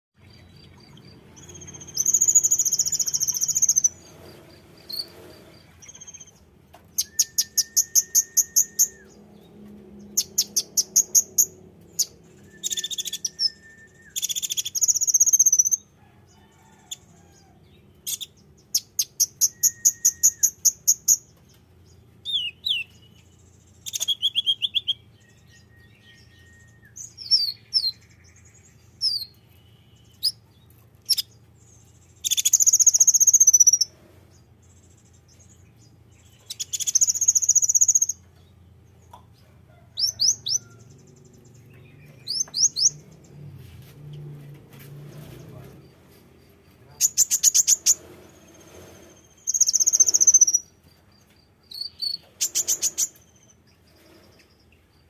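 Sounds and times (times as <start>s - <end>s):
bird chattering trills: 46.4s - 50.7s.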